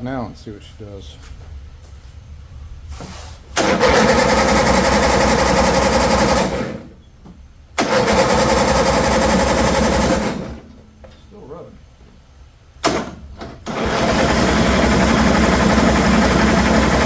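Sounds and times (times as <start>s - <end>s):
mower engine cranking: 3.6s - 7.0s, 7.8s - 10.8s, 12.8s - 17.0s.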